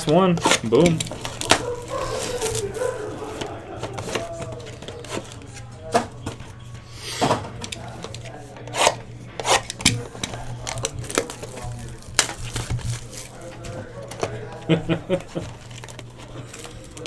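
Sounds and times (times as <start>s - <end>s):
cards tapping and sliding: 0.0s - 17.0s.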